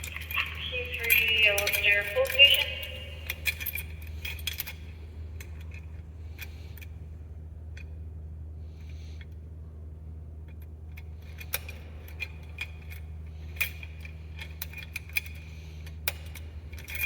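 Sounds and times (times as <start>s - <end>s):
light metallic clinks: 0.0s - 7.0s, 10.5s - 17.0s
steady low hum: 0.0s - 17.0s.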